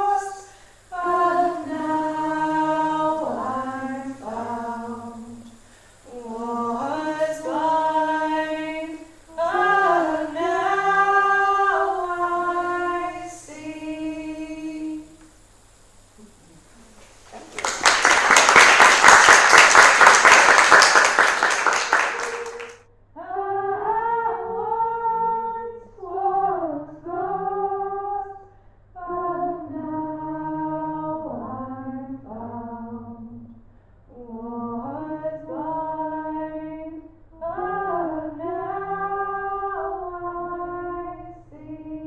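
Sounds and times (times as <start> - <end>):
woman singing unaccompanied: 0.0 - 15.3, 21.7 - 33.4, 34.1 - 42.0
applause: 17.2 - 22.8.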